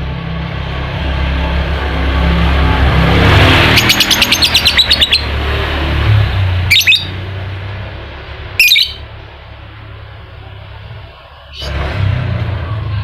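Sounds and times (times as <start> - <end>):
lovebird chattering trill: 3.8 - 5.3, 6.7 - 7.2, 8.6 - 9.0
shrill bird calls: 3.8 - 5.3, 6.7 - 7.2, 8.6 - 9.0.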